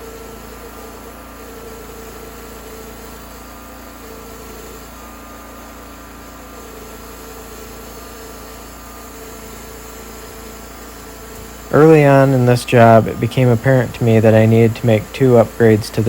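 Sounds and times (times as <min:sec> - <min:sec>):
sawmill running: 0:00.0 - 0:16.0
constant hum: 0:11.2 - 0:16.0.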